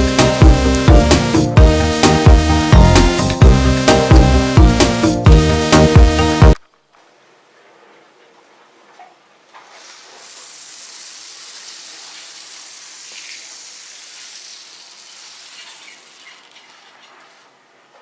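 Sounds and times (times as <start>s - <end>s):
aerosol can spraying: 0.0s - 4.1s, 9.6s - 17.4s.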